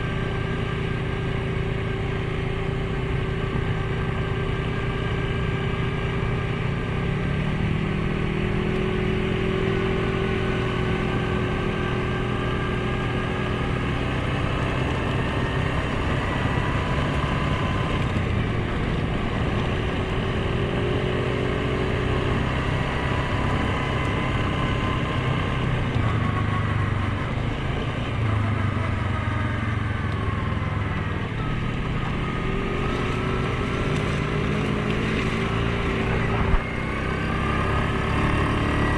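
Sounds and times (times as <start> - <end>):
quad bike engine revving: 31.5 - 38.9.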